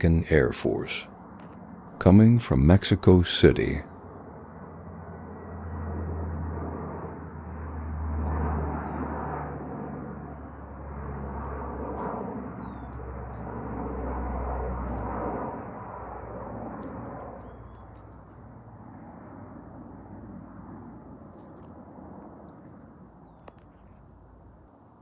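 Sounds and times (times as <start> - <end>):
turboprop plane flying over: 0.0 - 25.0
birds chirping: 12.5 - 14.4, 17.4 - 18.4.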